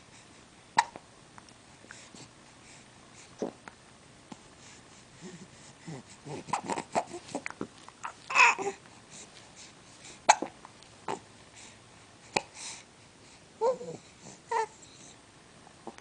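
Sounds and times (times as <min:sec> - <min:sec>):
small vocal sounds: 0:05.2 - 0:08.8.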